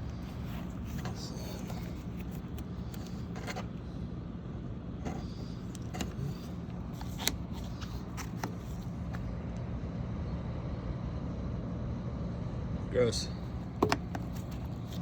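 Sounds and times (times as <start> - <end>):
air handler humming: 0.0 - 4.2, 4.8 - 9.5, 13.1 - 15.0.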